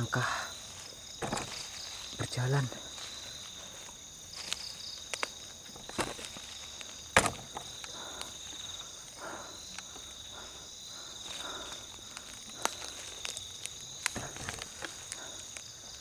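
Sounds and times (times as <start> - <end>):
crickets trilling: 0.0 - 16.0
soft rustles and clicks: 12.1 - 15.7.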